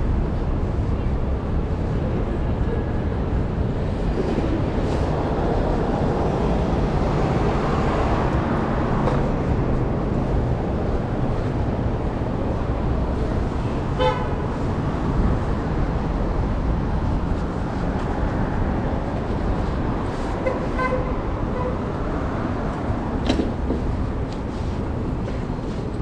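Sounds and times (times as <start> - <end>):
city street traffic: 0.0 - 26.0
car horn honks: 14.0 - 14.4.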